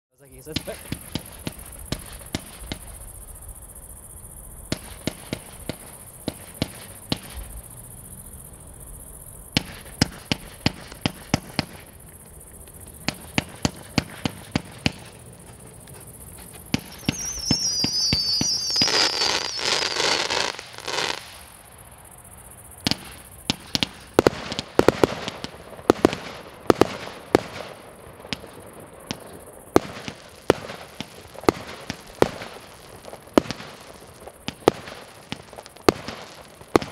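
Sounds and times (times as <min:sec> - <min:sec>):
firework launch reports: 0:00.2 - 0:03.1, 0:16.7 - 0:21.6
firework dense crackling: 0:00.2 - 0:36.9
firework warbling whistle: 0:12.9 - 0:21.7.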